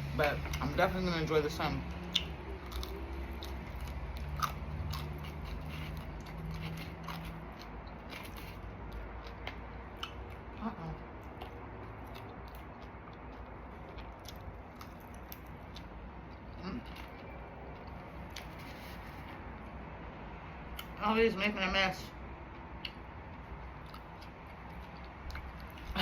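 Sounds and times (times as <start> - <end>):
person chewing crunchy food: 2.0 - 19.4, 22.5 - 25.9.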